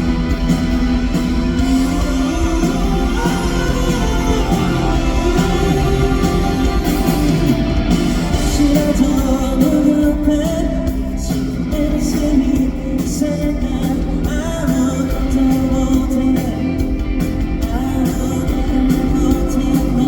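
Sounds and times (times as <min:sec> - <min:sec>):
lead vocal singing: 0:00.0 - 0:20.0
live pop-rock band: 0:00.0 - 0:20.0.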